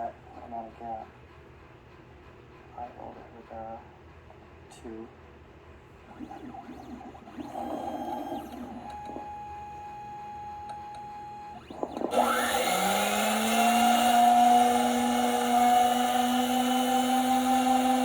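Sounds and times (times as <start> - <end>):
motor whine: 6.1 - 18.0
cutter motor spinning up: 6.2 - 9.5, 10.2 - 18.0.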